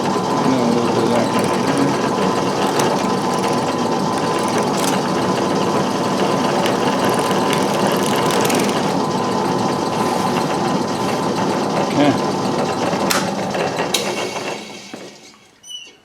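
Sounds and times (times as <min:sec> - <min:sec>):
rotary tool grinding: 0:00.8 - 0:09.2.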